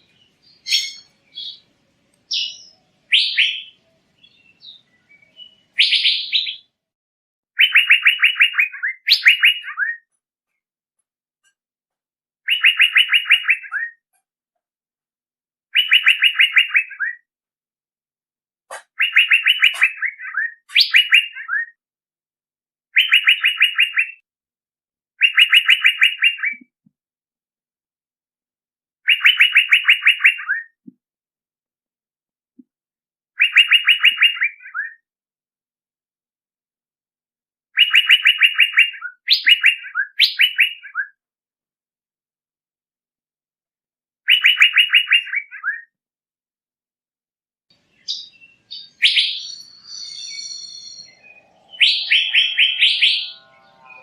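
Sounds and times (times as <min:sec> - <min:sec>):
bird calling rapid repeated notes: 0:07.6 - 0:10.1, 0:12.5 - 0:14.0, 0:15.7 - 0:17.3, 0:18.7 - 0:21.8, 0:23.0 - 0:24.2, 0:25.2 - 0:26.7, 0:29.1 - 0:30.8, 0:33.4 - 0:35.0, 0:37.8 - 0:41.2, 0:44.3 - 0:45.9, 0:48.0 - 0:54.0.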